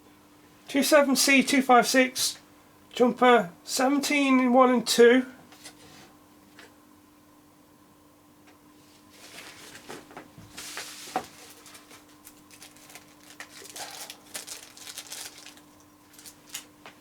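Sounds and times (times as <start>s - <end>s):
faint steady hum: 0.0s - 17.0s
crinkling rustling handling: 9.0s - 17.0s.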